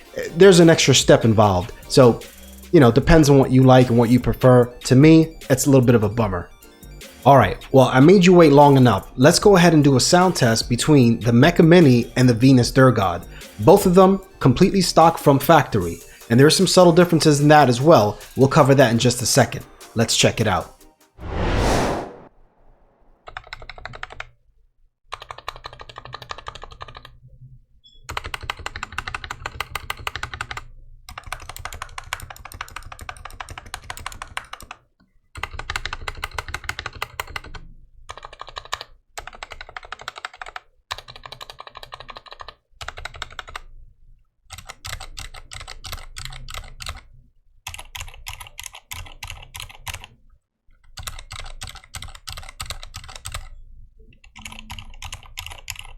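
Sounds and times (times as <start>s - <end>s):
fast typing on mechanical keyboard: 23.3s - 24.3s, 25.1s - 27.2s, 28.1s - 34.8s, 35.4s - 43.7s, 44.5s - 50.1s, 50.8s - 53.6s, 54.2s - 55.9s.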